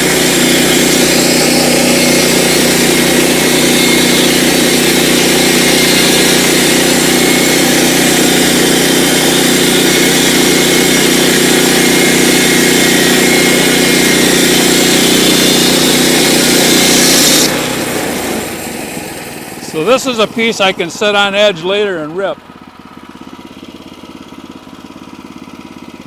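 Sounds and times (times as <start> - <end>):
saw blade hissing through log: 0.0 - 20.8
sawmill engine running: 0.0 - 26.0.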